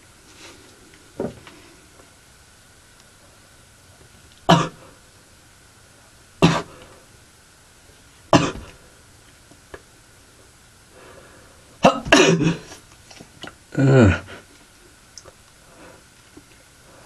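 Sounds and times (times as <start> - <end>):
boy coughing: 8.4 - 8.7, 11.8 - 12.8.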